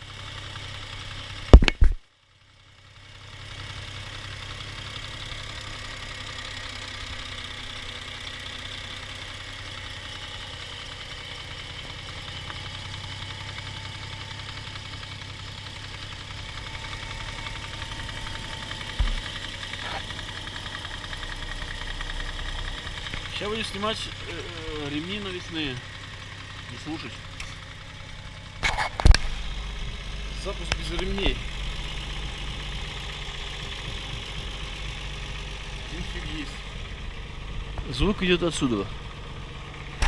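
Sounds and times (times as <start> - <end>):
car engine idling: 0.0 - 40.0
engine knocking: 0.0 - 40.0
short thump: 1.5 - 2.0, 18.9 - 19.3.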